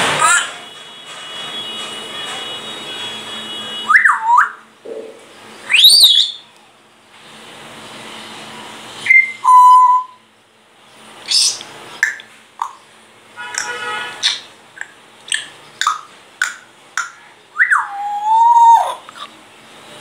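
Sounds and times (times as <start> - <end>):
parrot squeaks: 0.2 - 0.6, 11.3 - 12.2, 13.6 - 14.5, 17.6 - 19.3
parrot whistling: 3.8 - 4.6, 5.7 - 6.4, 9.0 - 10.2, 17.6 - 19.0.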